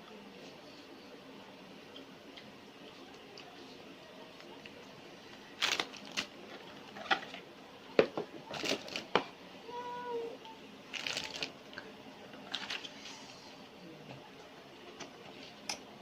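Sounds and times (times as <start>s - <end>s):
packaging rustling and scraping: 8.5s - 9.1s, 10.9s - 11.5s.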